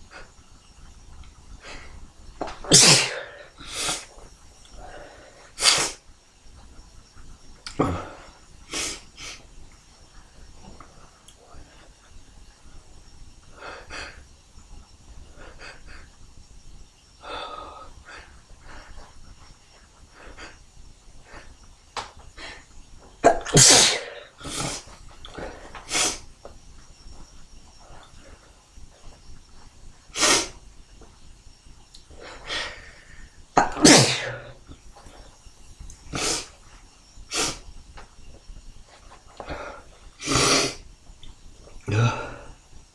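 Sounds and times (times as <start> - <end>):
person sneezing: 2.7 - 4.0, 23.2 - 24.8, 33.6 - 34.5.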